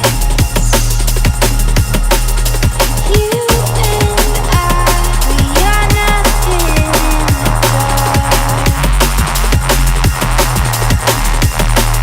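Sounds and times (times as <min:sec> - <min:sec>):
drum and bass music: 0:00.0 - 0:12.0.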